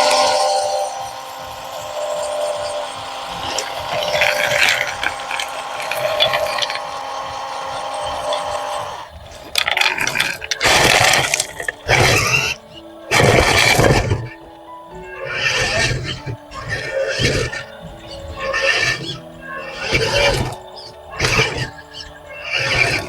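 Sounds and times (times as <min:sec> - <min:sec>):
loud rough noise bursts: 0:00.0 - 0:14.4
electric gear motors whirring: 0:00.0 - 0:23.0.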